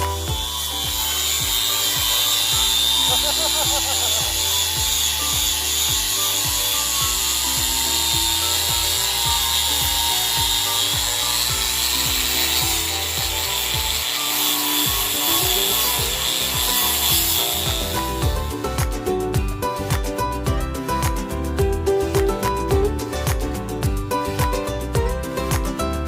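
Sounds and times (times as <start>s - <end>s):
tool scraping and rasping: 0.0s - 20.0s
background music with steady beat: 0.0s - 26.0s.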